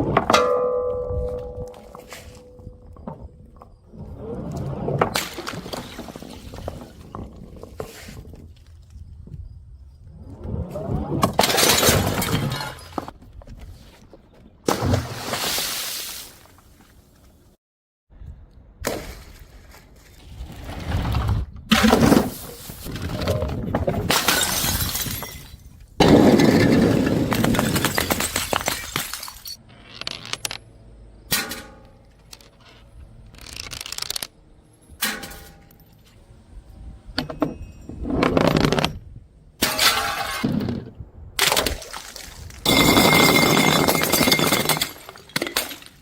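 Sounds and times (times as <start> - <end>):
glass bottles smashing: 11.4 - 13.1, 24.1 - 29.6, 39.6 - 40.5, 41.4 - 46.0
glass shards clinking: 42.7 - 46.0.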